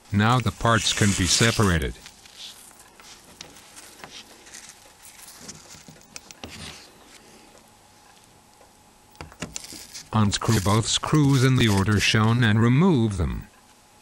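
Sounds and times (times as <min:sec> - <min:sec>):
phone parts clicking and scraping: 0:00.0 - 0:06.9, 0:09.1 - 0:12.2.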